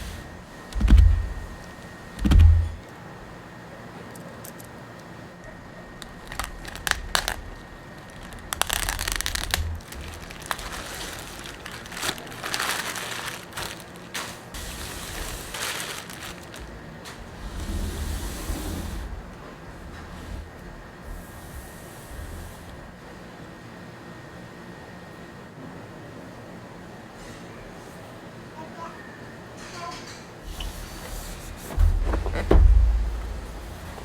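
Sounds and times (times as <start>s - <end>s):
sharp clicks and taps: 2.2s - 2.8s
packaging rustling and crinkling: 6.0s - 17.4s.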